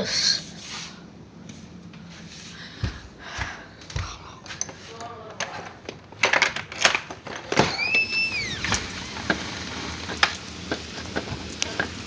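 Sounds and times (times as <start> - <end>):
high rising squeak: 7.6 - 9.0
heavy rain: 7.8 - 12.0.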